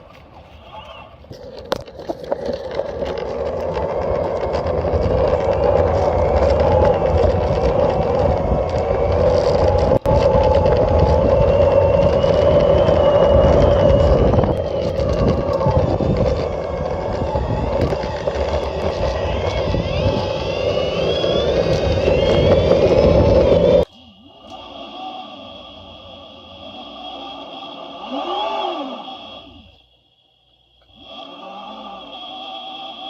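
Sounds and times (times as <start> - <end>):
skateboard wheels rumbling: 0.0 - 23.9
thin motor whine: 0.0 - 33.0
electric skateboard motor drone: 0.8 - 29.9, 30.8 - 33.0.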